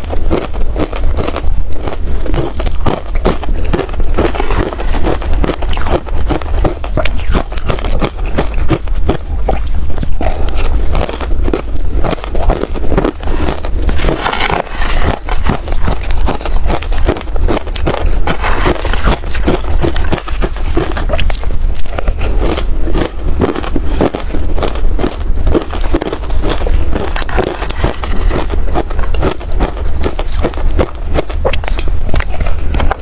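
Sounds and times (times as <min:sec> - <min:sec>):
ice being chewed: 0:00.0 - 0:33.0.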